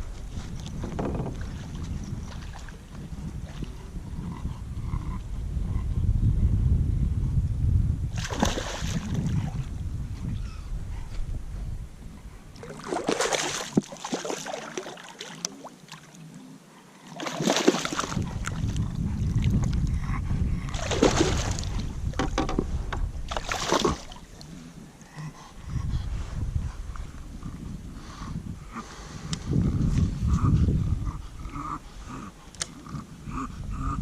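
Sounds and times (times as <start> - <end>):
wind rumble on microphone: 0.0 - 13.9, 17.9 - 34.0
paddle strokes in water: 12.6 - 16.2.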